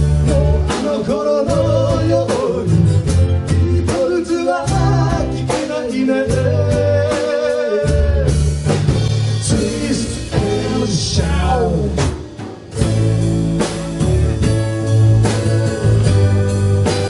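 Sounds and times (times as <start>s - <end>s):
person singing: 0.0s - 8.6s, 9.4s - 12.3s
rock band playing: 0.0s - 17.0s.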